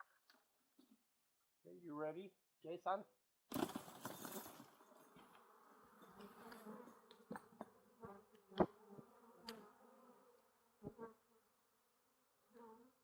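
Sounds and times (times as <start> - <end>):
bee swarm buzzing: 5.0 - 11.3.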